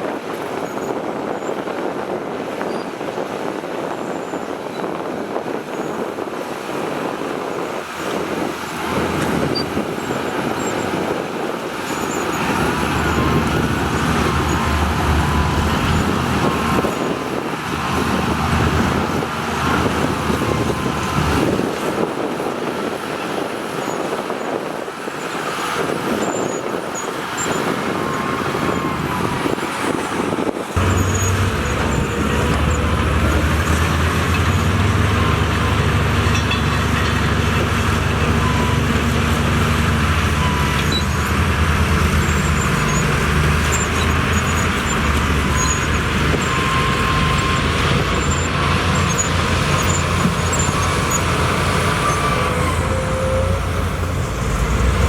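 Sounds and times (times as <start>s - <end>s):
diesel machinery engine rumble: 0.1s - 55.0s.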